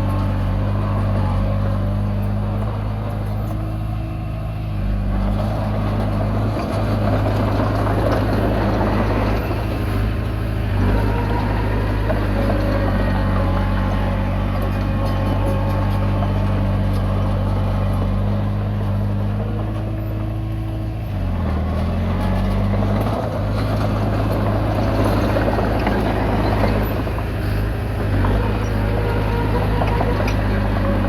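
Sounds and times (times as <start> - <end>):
bulldozer diesel engine running: 0.0 - 31.0
rough mechanical noise: 0.0 - 31.0.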